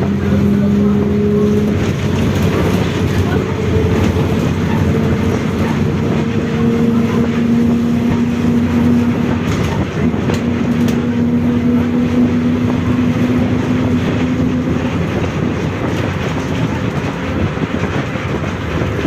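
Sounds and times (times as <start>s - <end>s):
road and drivetrain rumble: 0.0s - 19.0s.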